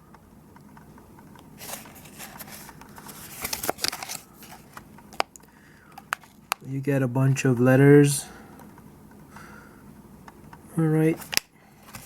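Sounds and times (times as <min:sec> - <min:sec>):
packaging rustling: 0:01.6 - 0:06.6, 0:11.2 - 0:12.0.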